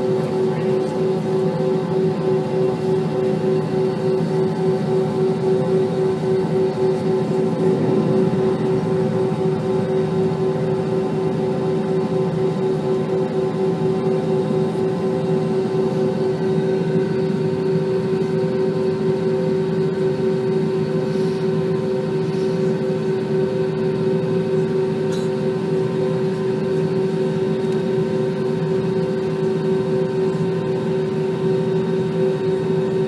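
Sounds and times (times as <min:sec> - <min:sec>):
aircraft cabin engine drone: 0:00.0 - 0:33.0
air rushing: 0:07.4 - 0:10.7.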